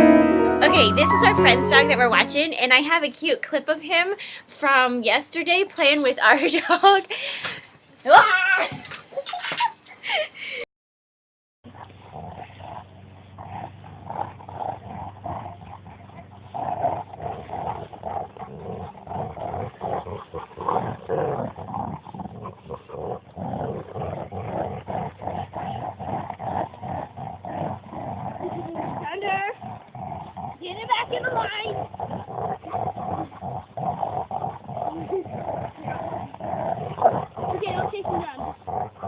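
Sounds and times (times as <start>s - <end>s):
dogs growling in play: 11.7s - 39.0s.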